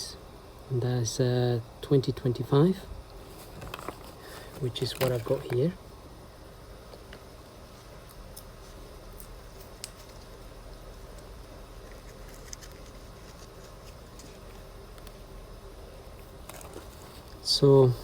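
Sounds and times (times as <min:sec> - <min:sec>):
steady low hum: 0:00.0 - 0:18.0
faint clicks and scratching: 0:03.3 - 0:05.7, 0:11.0 - 0:15.2, 0:16.4 - 0:17.4.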